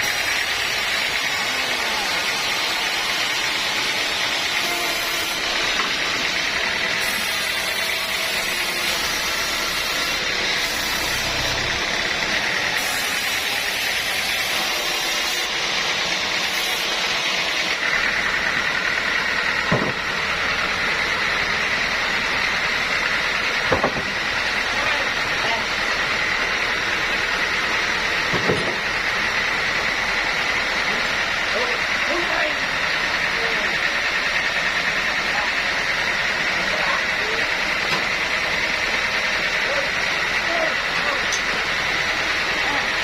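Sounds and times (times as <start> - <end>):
steady high tone: 0.0 - 15.6
sawmill machinery running: 0.0 - 43.0
sharp knocks: 19.7 - 20.0, 23.7 - 24.2.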